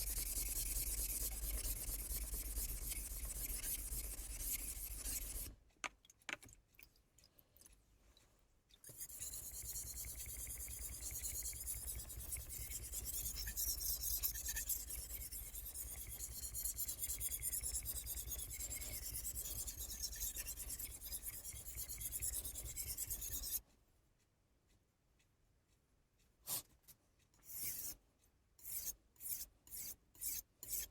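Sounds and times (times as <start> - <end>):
knife rubbing on whetstone: 0.0 - 5.5, 8.9 - 23.6, 27.4 - 28.0, 28.6 - 30.9.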